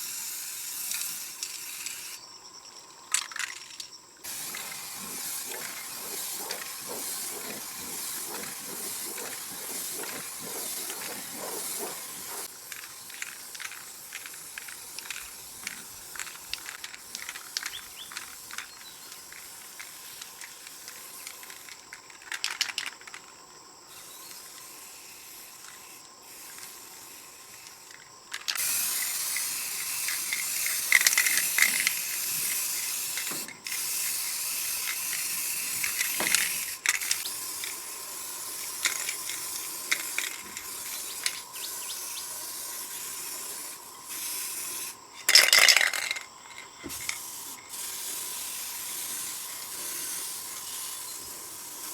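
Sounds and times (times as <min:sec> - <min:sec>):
faint ticks and clicks: 0:03.1 - 0:23.4
hissing nozzle spray: 0:04.2 - 0:16.5, 0:28.6 - 0:45.0, 0:46.9 - 0:51.9.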